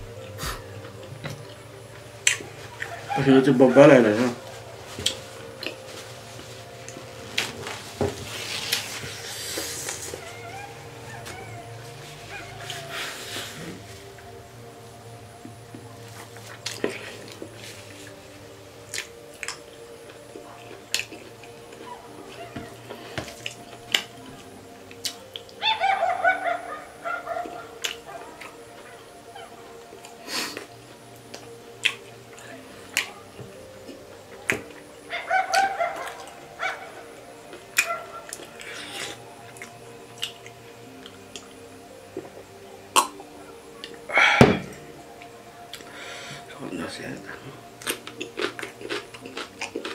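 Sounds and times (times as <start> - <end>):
mouth noises of eating: 0.0 - 1.6, 27.1 - 44.4, 47.4 - 49.9
faint steady hum: 0.0 - 49.9
short throat sound: 0.4 - 0.8.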